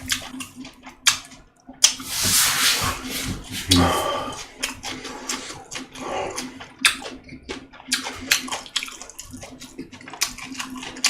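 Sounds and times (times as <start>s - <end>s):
person chewing food: 0.0s - 11.0s.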